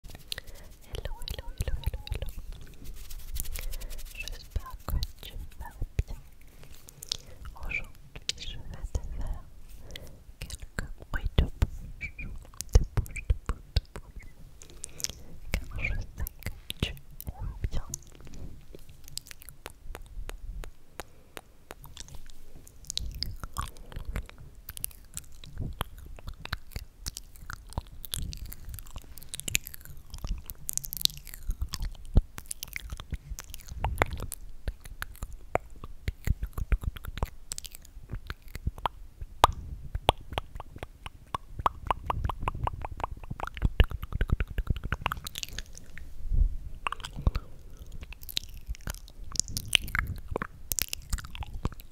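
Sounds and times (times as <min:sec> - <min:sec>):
lip smacks: 0:00.0 - 0:46.2, 0:46.8 - 0:51.9
tongue clicks: 0:00.1 - 0:46.1, 0:46.8 - 0:51.9.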